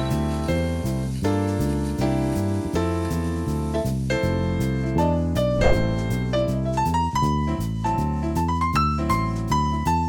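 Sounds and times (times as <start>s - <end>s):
bass line: 0.0s - 10.0s.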